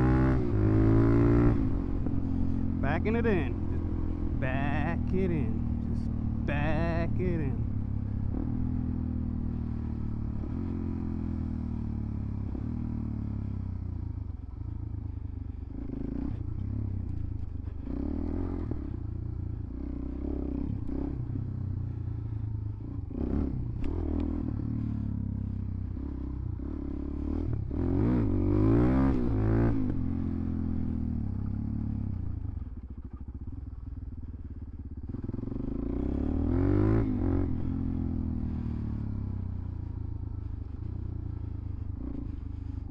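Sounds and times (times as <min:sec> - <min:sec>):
motorcycle engine revving: 0:00.0 - 0:42.9.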